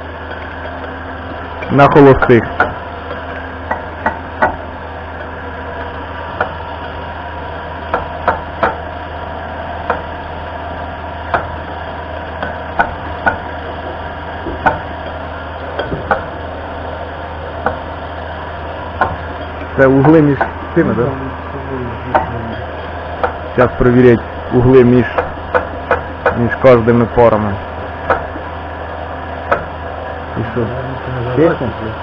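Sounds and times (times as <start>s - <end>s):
fuel pump mechanical hum: 0.0s - 32.0s.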